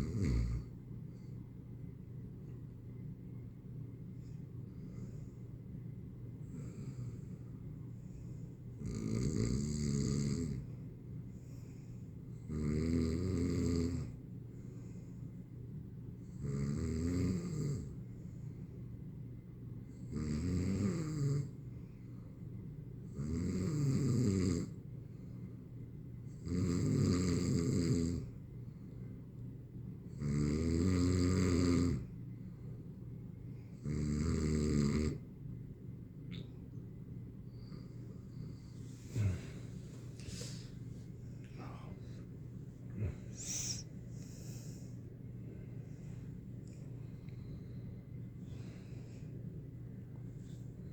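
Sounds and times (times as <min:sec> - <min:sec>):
person snoring: 0:39.1 - 0:39.6, 0:43.0 - 0:44.7.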